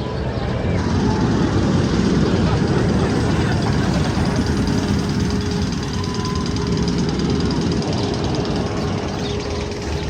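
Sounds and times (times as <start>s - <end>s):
roller coaster rumbling on track: 0.0s - 10.0s.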